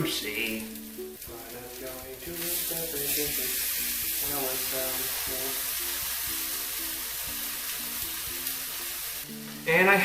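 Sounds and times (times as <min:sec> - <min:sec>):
fruit sizzling in a pan: 0:00.0 - 0:10.0
simple melody of held notes: 0:03.8 - 0:10.0.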